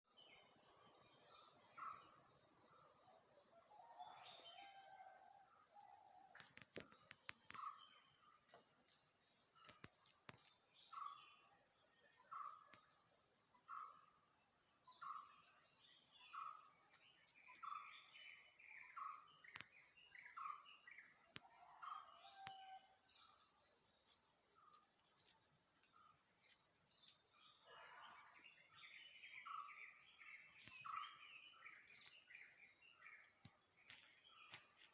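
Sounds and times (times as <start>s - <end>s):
bird chirps: 24.6s - 34.9s.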